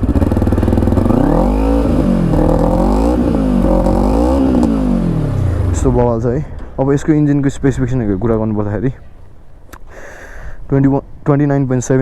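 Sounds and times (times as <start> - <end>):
motorcycle engine idling and revving: 0.0 - 7.2.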